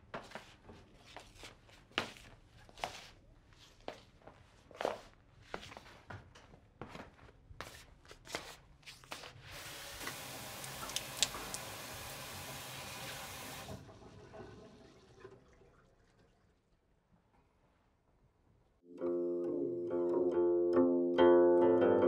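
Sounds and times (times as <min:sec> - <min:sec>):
light knocks and footsteps: 0:00.0 - 0:09.4
water running: 0:09.5 - 0:16.7.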